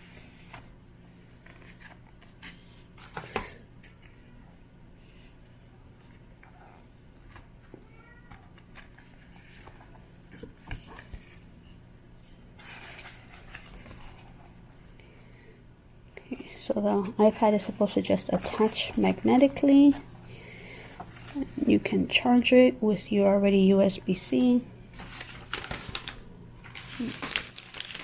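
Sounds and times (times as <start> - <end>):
packaging rustling: 25.0 - 28.0.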